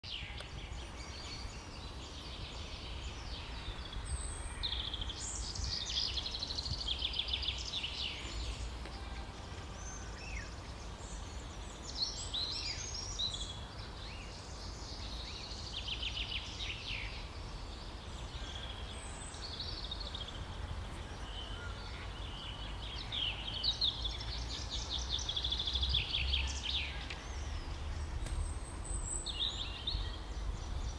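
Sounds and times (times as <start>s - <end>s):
songbirds singing: 0.0s - 30.9s.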